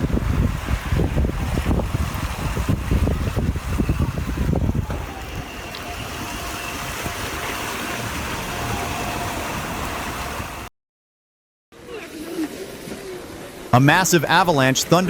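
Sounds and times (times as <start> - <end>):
river rushing with hail and ice: 0.0 - 10.7.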